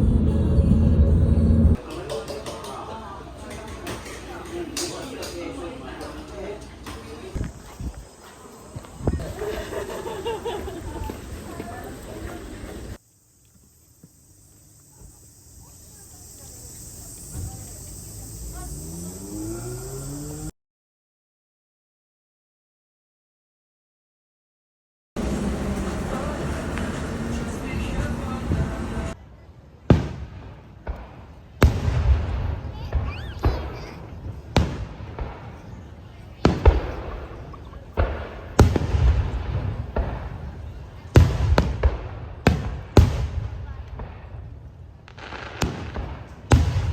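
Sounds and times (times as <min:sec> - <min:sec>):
vehicle engine revving: 0:00.0 - 0:01.8, 0:18.2 - 0:20.5, 0:25.2 - 0:29.2
insects chirping: 0:07.3 - 0:20.5
fireworks bursting with bangs: 0:29.8 - 0:46.9.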